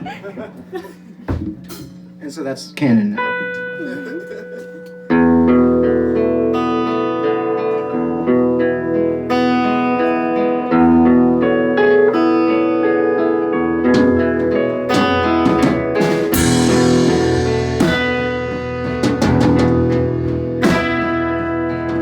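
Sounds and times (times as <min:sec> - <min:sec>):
guitar picked notes and chords: 0:02.8 - 0:22.0
drum or cymbal hits: 0:14.0 - 0:22.0.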